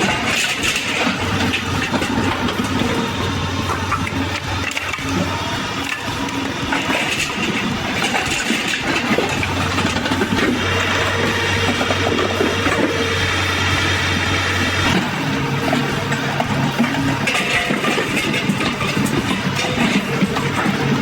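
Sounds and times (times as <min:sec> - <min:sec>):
machine engine humming: 0:00.0 - 0:21.0.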